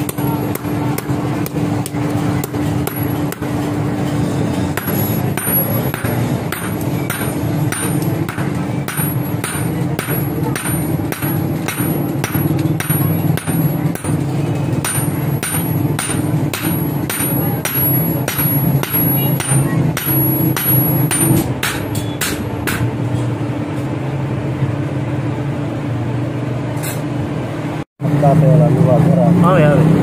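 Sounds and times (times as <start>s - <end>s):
hammer striking metal: 0.0s - 23.3s.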